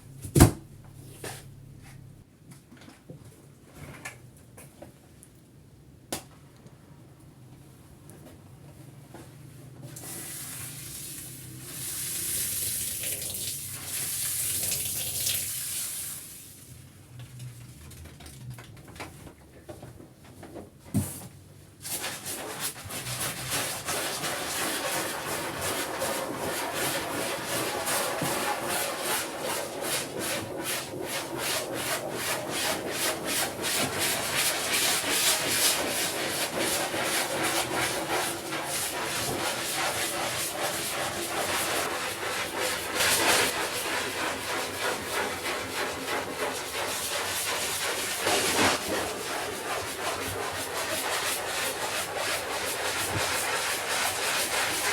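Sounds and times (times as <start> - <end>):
scrubbing a rug: 21.8 - 54.9.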